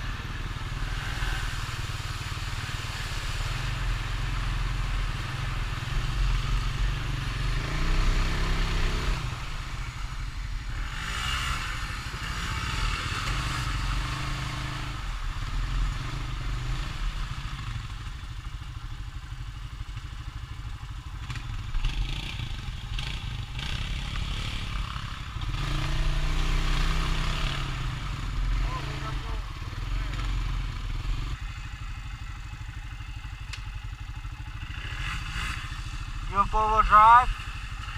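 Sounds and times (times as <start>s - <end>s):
atv engine revving: 0.0s - 18.2s, 21.0s - 37.9s.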